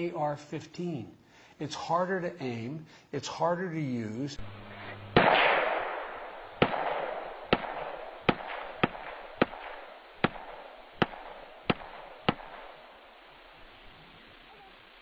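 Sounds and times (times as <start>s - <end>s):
gunshots echoing: 4.4s - 13.2s.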